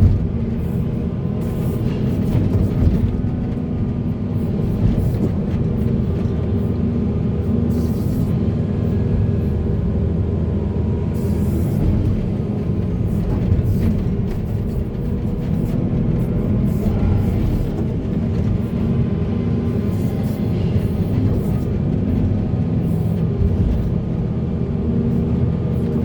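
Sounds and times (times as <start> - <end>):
machinery knocks and clatter: 0.0 - 6.9, 11.6 - 26.0
heavy diesel engine running: 0.0 - 26.0.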